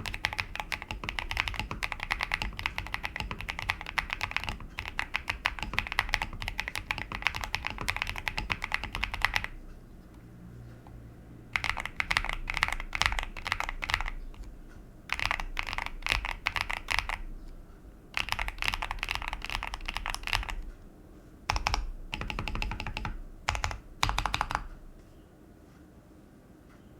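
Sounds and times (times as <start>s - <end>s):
mechanical keyboard key clacks: 0.0s - 9.6s, 15.1s - 17.2s.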